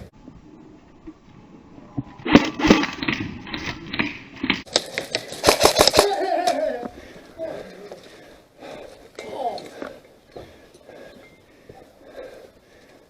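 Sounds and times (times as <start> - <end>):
airsoft guns firing: 4.7 - 6.2.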